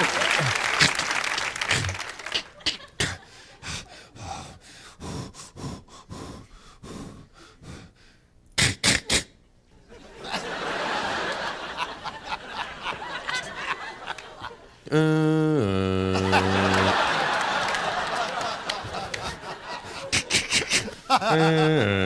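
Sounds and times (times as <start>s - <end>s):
mouth gasps breaths and clicks: 1.6s - 9.4s
loud sharp vocal bursts: 8.6s - 9.4s
studio audience laughter: 9.9s - 14.8s, 16.2s - 21.8s.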